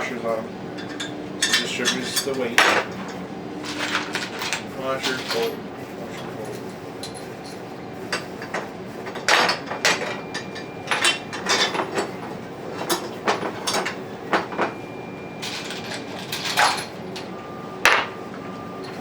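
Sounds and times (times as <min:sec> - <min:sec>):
metal bolts clinking: 0:00.8 - 0:05.5.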